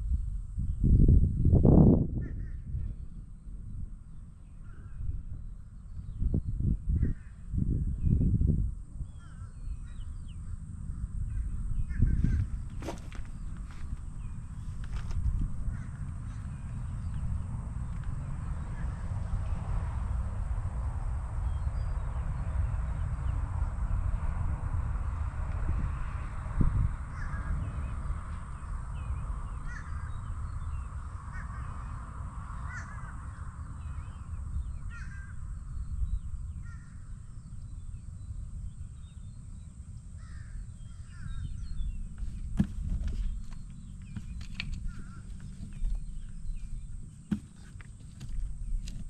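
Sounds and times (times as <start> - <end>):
low steady rumble: 0.0 - 49.0
birds calling: 9.0 - 19.6, 26.2 - 49.0.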